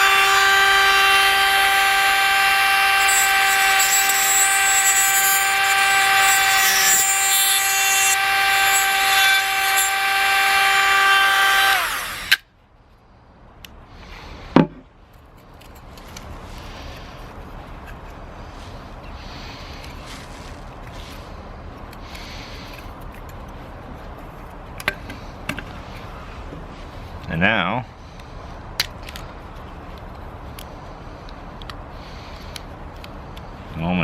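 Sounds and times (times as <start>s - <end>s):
rotary tool whining: 0.0s - 12.4s.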